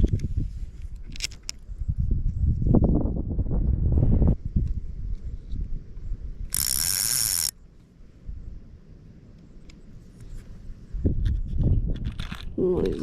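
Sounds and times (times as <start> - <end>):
fishing reel ratcheting buzz: 6.5 - 7.6.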